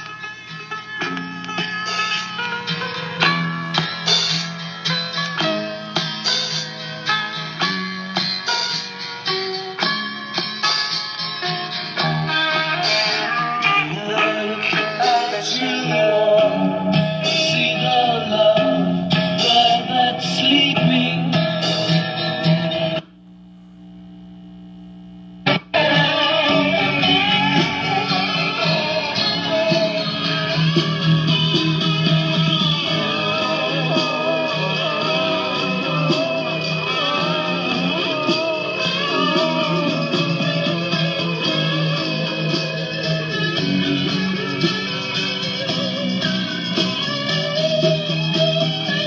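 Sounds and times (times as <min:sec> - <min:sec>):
guitar pop music from record: 0:00.0 - 0:23.1, 0:23.8 - 0:49.0
steady held tone: 0:23.0 - 0:25.8.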